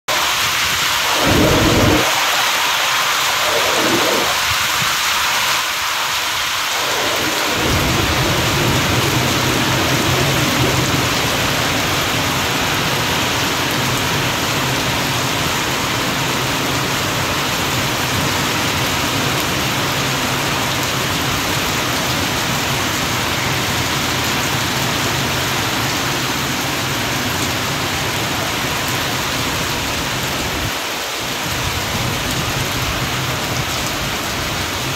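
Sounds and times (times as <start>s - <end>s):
heavy rain pouring: 0.0s - 34.9s
low rumble: 1.0s - 2.2s.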